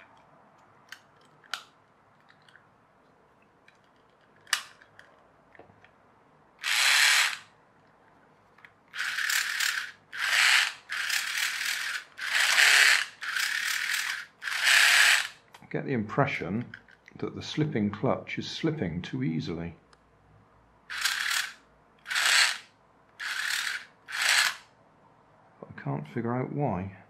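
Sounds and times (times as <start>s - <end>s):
toy gear drive ratcheting: 4.3s - 5.0s, 6.6s - 7.5s, 8.9s - 15.5s, 20.9s - 24.7s.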